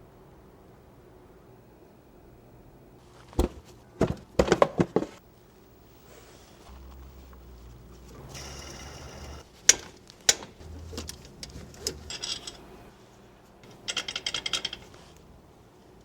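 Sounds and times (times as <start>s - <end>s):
metallic clacks: 8.6s - 13.0s, 13.6s - 15.3s.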